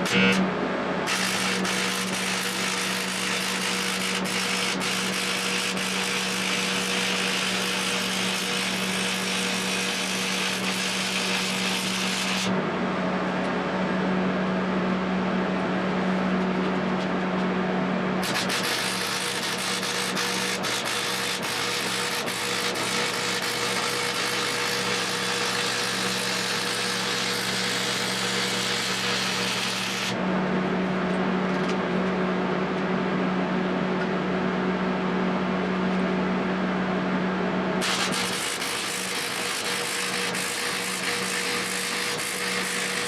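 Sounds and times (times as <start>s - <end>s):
welding arc crackling hiss: 0.0s - 0.4s, 1.1s - 12.5s, 18.2s - 30.2s, 37.8s - 43.0s
welder humming: 0.0s - 12.6s, 18.2s - 30.2s, 37.8s - 43.0s.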